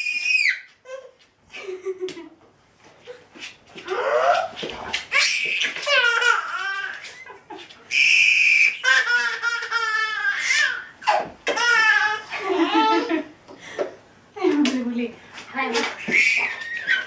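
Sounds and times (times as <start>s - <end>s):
baby shrill squeal: 0.0s - 0.7s, 5.1s - 7.3s, 7.9s - 12.2s, 16.0s - 17.0s
baby laughing: 3.9s - 13.3s, 16.0s - 17.0s.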